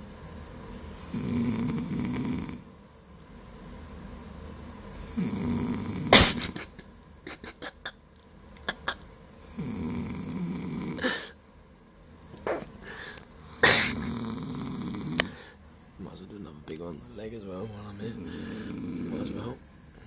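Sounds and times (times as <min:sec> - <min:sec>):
boy snoring: 0:01.0 - 0:02.7, 0:05.0 - 0:07.9, 0:08.7 - 0:11.4, 0:12.4 - 0:15.6, 0:18.0 - 0:19.6.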